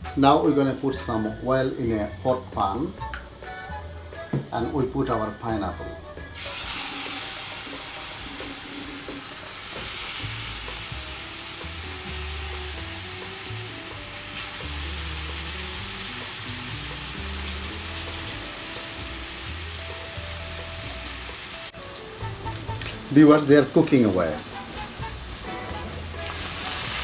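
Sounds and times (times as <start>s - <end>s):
background music: 0.0s - 27.0s
pineapple sizzling in oil: 6.3s - 27.0s.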